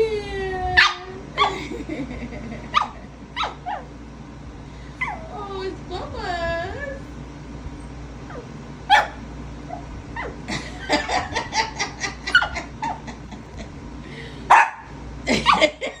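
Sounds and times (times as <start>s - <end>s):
small dog barking and yipping: 0.8s - 1.6s, 2.7s - 4.0s, 5.0s - 5.4s, 8.2s - 10.5s, 12.3s - 13.0s, 14.5s - 15.8s.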